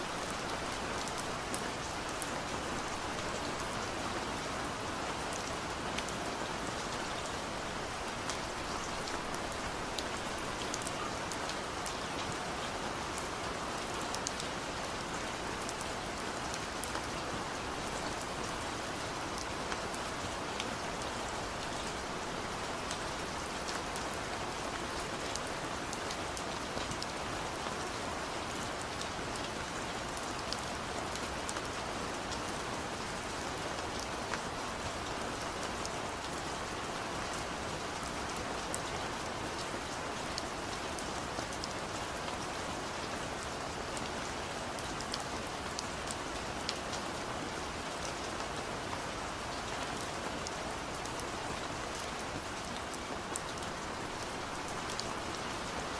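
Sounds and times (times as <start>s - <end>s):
steady rain: 0.0s - 55.9s.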